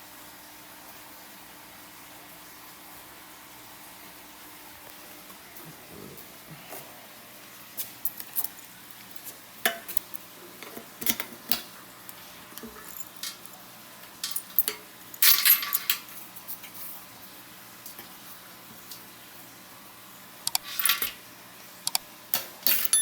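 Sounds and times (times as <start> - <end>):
small metal objects clinking: 12.6 - 13.6, 14.2 - 16.0, 20.5 - 21.2, 22.6 - 23.0.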